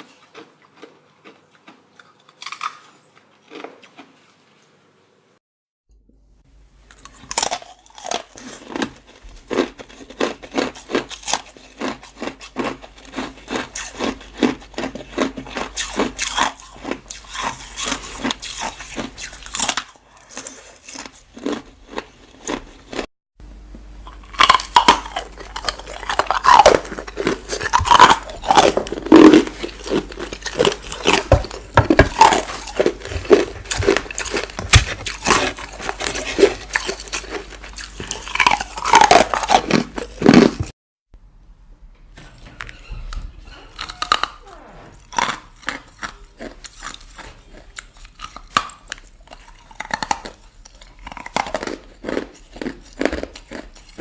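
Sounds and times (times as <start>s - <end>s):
ice crunching when chewed: 0.0s - 4.5s, 6.9s - 23.1s, 24.0s - 40.7s, 45.0s - 54.0s
short squeaky pitched sounds: 42.4s - 45.0s.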